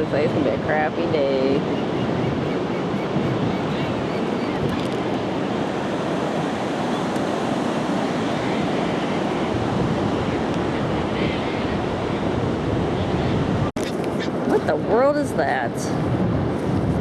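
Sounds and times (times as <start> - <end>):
wind rumbling on microphone: 0.0 - 17.0.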